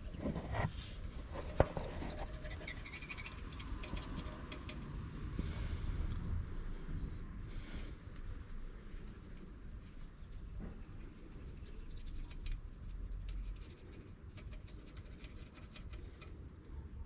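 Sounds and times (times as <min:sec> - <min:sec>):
scraping on metal gasket surface: 0:00.0 - 0:04.9, 0:10.6 - 0:16.4.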